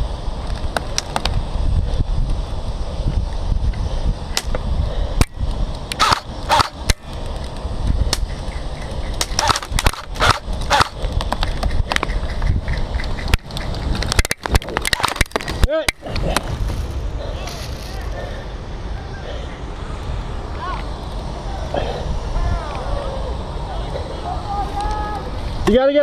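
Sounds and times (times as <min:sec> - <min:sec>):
wind on microphone: 0:00.0 - 0:25.8
handling rumble: 0:00.0 - 0:26.0
airsoft gun shots: 0:06.0 - 0:07.0, 0:09.2 - 0:11.0.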